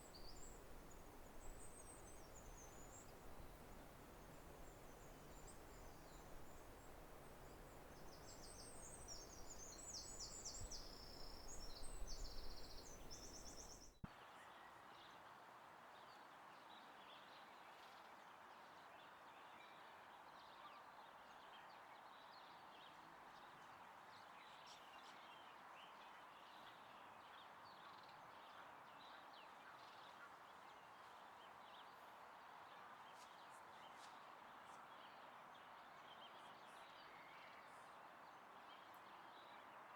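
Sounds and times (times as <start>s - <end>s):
distant bird chirps: 0.0s - 13.9s
steady soft hiss: 0.0s - 14.0s.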